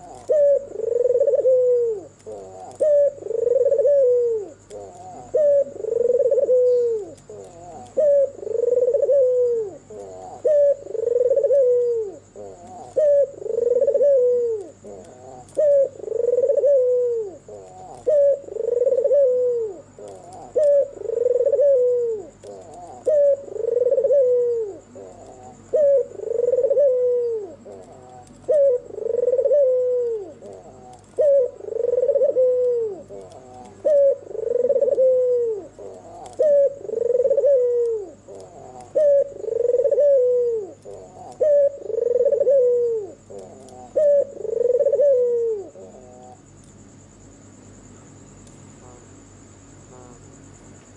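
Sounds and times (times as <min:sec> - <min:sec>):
dove cooing: 0:00.0 - 0:46.6
faint high-pitched whine: 0:00.0 - 0:50.9.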